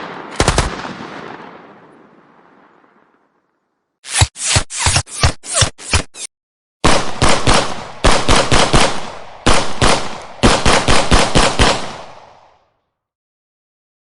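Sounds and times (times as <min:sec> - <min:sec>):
gunshots: 0:00.0 - 0:01.9, 0:04.1 - 0:12.5
rapid bursts of gunfire: 0:00.3 - 0:00.8, 0:04.1 - 0:12.3.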